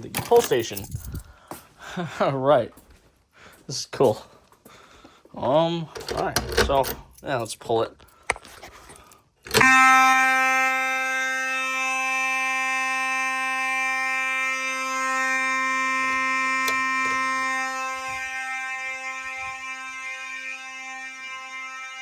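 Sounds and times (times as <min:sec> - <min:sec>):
fire alarm pull station pulled: 0:06.0 - 0:07.2, 0:09.5 - 0:09.7
fire alarm horn buzzing: 0:09.5 - 0:22.0.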